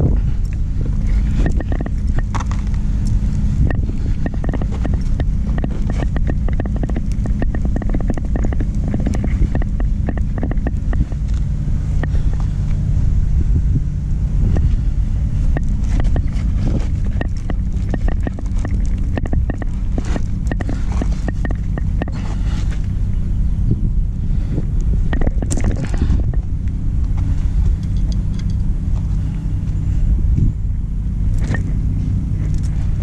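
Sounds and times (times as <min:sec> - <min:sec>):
engine idling: 0:00.0 - 0:33.0
hand tools clicking and knocking: 0:15.6 - 0:22.4.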